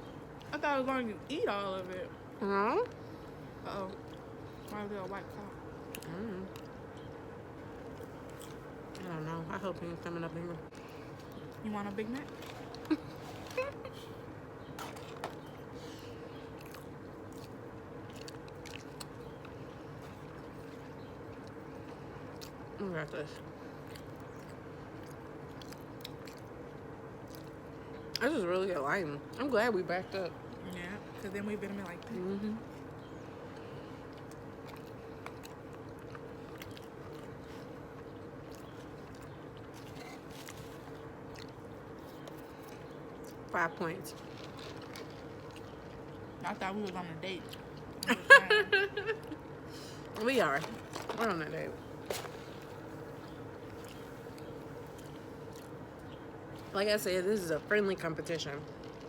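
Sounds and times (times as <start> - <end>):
steady low hum: 0.0 - 59.0
chewing and biting food: 2.8 - 9.2, 10.7 - 28.2, 31.7 - 43.5, 44.1 - 48.1.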